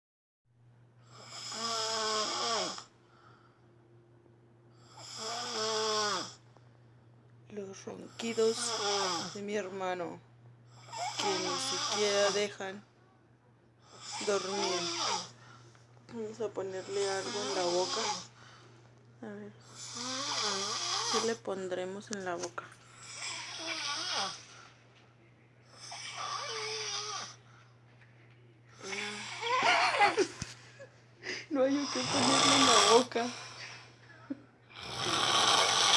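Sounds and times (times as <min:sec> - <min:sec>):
man snoring: 0:01.1 - 0:02.9, 0:04.8 - 0:06.4, 0:08.4 - 0:09.4, 0:10.8 - 0:12.5, 0:13.9 - 0:15.3, 0:16.8 - 0:18.3, 0:19.7 - 0:21.4, 0:23.0 - 0:24.5, 0:25.7 - 0:27.4, 0:28.8 - 0:30.1, 0:31.8 - 0:33.6, 0:34.7 - 0:35.9.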